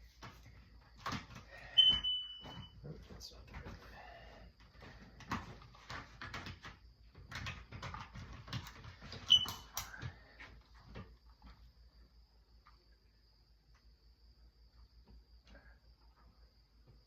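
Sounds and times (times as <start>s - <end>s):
smoke detector chirp: 1.8s - 2.8s, 9.3s - 9.8s.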